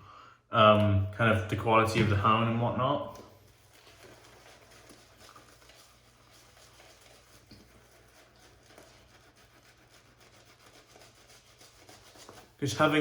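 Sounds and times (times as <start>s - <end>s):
shaving brush lathering soap: 3.1s - 13.0s.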